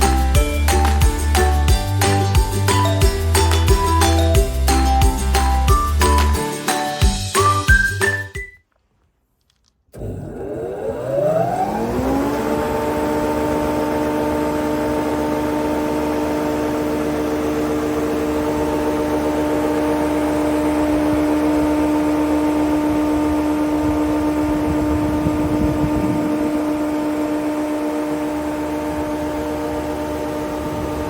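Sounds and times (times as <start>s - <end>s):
jointer-planer whining: 10.0s - 31.0s.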